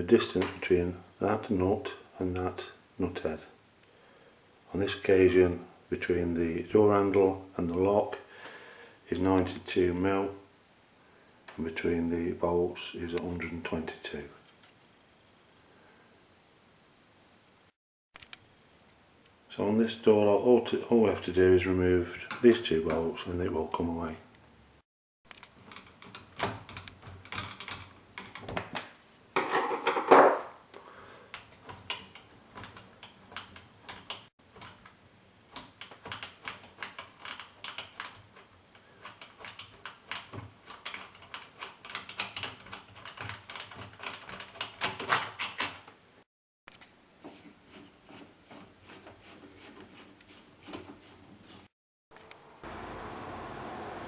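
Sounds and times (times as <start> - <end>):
metallic clicks and rattles: 25.3 - 28.9, 31.3 - 45.9.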